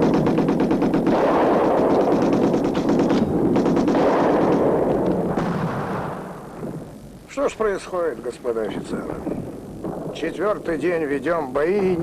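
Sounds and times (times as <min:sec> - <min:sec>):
rapid machine-gun fire: 0:00.0 - 0:06.4.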